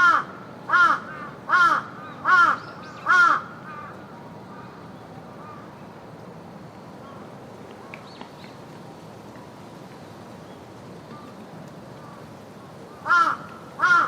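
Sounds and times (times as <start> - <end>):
raven cawing: 0.0 - 5.7, 12.0 - 12.3, 12.9 - 14.0
park ambience hiss: 0.0 - 14.0.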